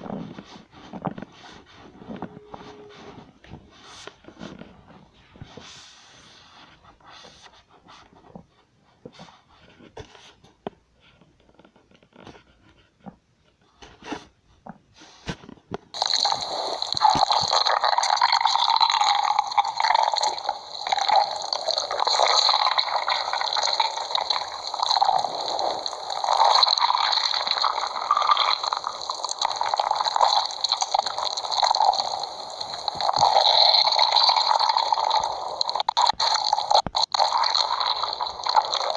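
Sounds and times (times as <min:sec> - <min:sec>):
cartoon stomach growl: 0:16.0 - 0:38.9.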